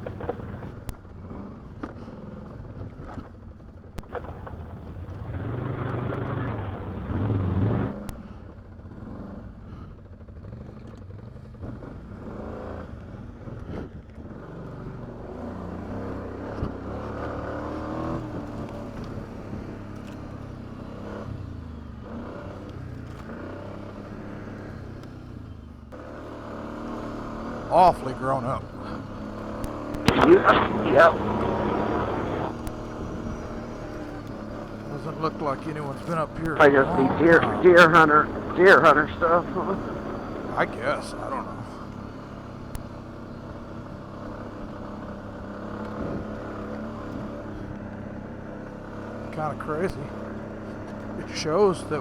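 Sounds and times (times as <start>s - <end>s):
atv engine running: 0.0s - 0.9s, 4.0s - 8.0s, 26.1s - 34.9s, 36.0s - 42.3s.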